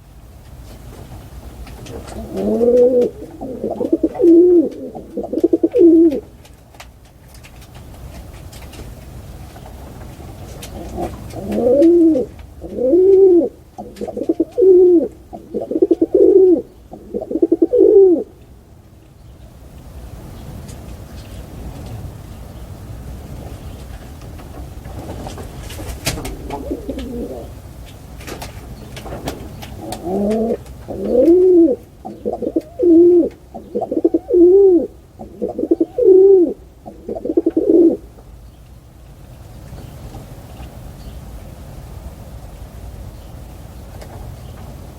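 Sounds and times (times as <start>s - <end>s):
wings fluttering: 0.6s - 18.1s, 23.4s - 38.0s
pigeon cooing: 1.8s - 6.4s, 10.6s - 18.4s, 26.0s - 27.6s, 29.3s - 38.1s.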